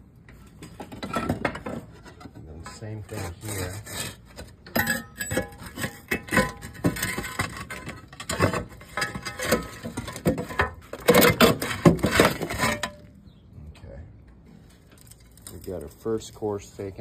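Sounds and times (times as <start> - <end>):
roofing scraping and knocking: 0.4 - 13.1.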